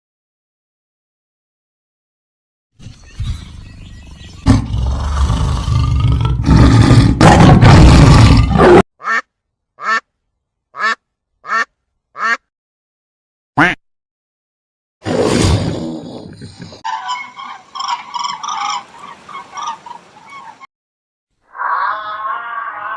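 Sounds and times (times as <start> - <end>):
rough rumbling animal sound: 3.0 - 8.8
duck quacking: 9.0 - 10.1, 10.8 - 12.5, 13.6 - 13.8.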